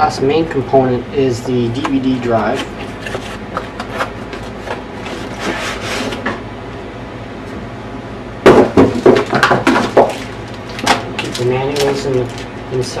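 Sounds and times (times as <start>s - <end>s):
quiet handling noises: 1.4s - 6.4s
knocks and clatter of items: 8.5s - 12.4s.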